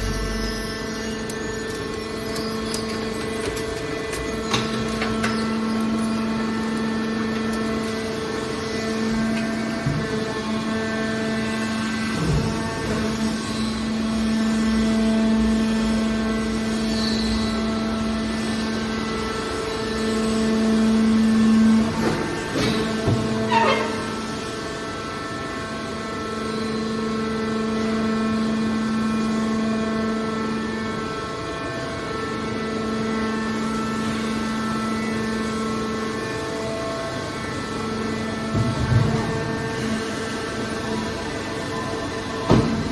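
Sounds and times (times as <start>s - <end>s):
hydraulic pump motor humming: 0.0s - 25.3s
machine knocks: 42.4s - 42.9s.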